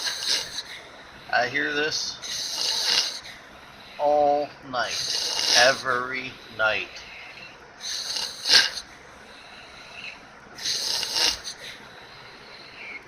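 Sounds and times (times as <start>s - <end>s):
person snoring with snort: 0.0s - 8.9s, 9.6s - 11.8s.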